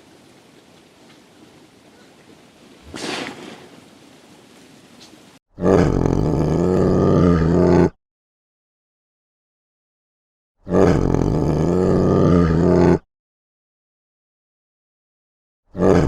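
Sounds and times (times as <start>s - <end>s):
faint steady hiss: 0.0s - 5.4s
brief rush of noise: 2.8s - 3.9s
loud long animal roar: 5.6s - 8.0s, 10.6s - 13.0s, 15.7s - 16.0s.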